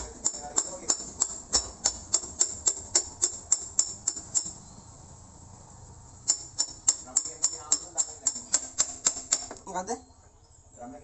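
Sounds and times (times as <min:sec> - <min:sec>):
sharp metallic tapping: 0:00.0 - 0:04.7, 0:06.2 - 0:09.7.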